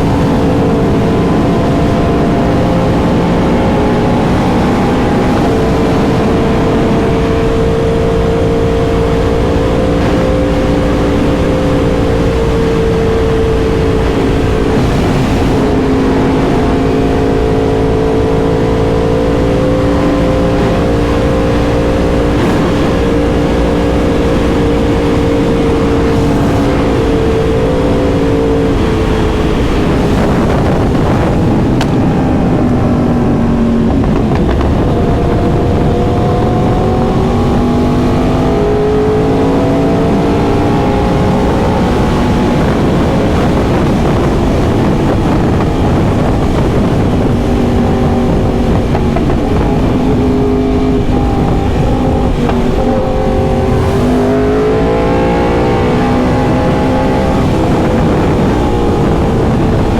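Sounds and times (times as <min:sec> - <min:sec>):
motorcycle engine cruising: 0:00.0 - 0:59.9
wind noise rushing: 0:00.0 - 0:59.9.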